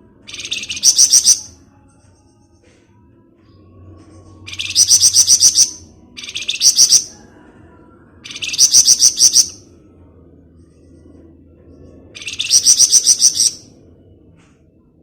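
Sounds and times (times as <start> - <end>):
songbird chattering trill: 4.5 - 7.1, 8.3 - 9.6, 12.2 - 13.6.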